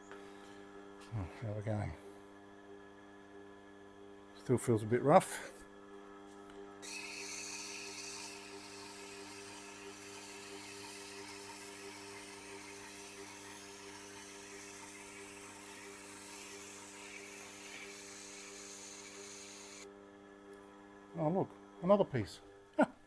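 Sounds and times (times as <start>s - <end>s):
sharpening machine humming: 6.3s - 19.9s
knife hissing on grinding wheel: 6.8s - 19.9s.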